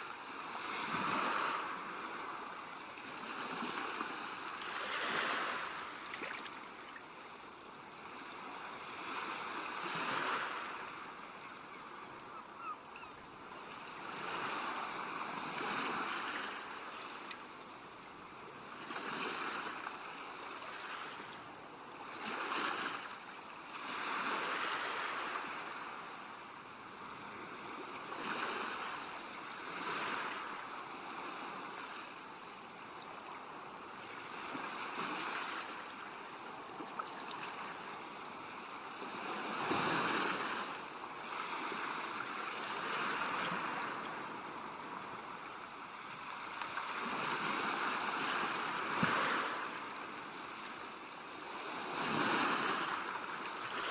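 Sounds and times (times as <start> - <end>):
ocean waves breaking: 0.2 - 7.0, 36.6 - 50.8.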